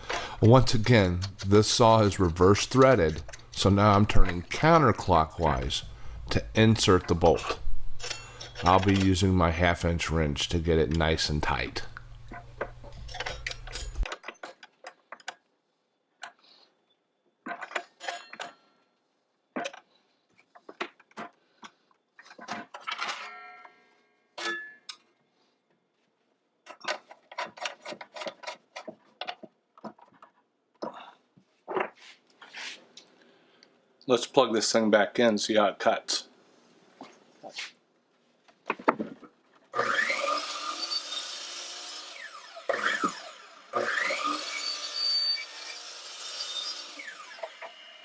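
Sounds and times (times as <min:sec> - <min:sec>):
metal tool clicks and clinks: 0:07.4 - 0:09.3, 0:12.9 - 0:14.1.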